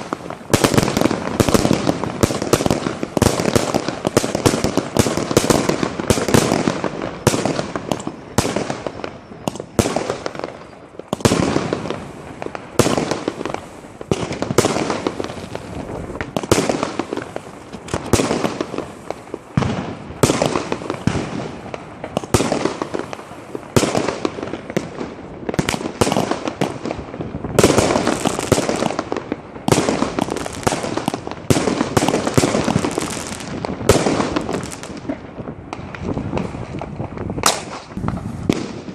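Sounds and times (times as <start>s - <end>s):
fireworks bangs and crackle: 0.0s - 38.9s.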